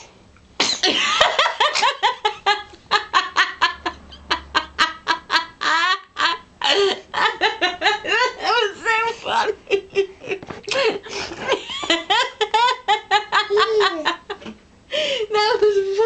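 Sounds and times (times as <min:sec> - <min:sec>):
baby giggling: 0:13.4 - 0:14.2.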